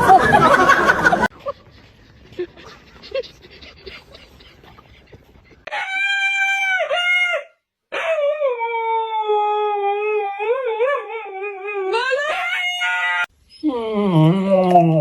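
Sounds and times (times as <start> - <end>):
dog howling: 5.7 - 15.0.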